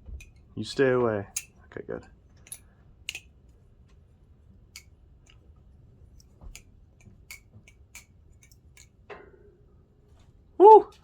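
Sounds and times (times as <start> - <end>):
butterfly knife clicking: 2.5 - 3.3, 4.7 - 5.4, 6.2 - 8.9.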